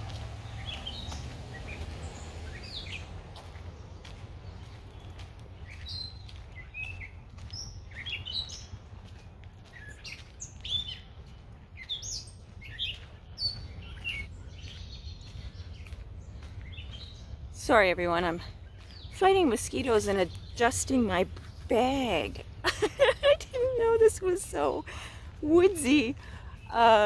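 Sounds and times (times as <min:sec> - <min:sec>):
steady low rumble: 0:00.0 - 0:09.8
songbirds chirping: 0:00.0 - 0:27.0.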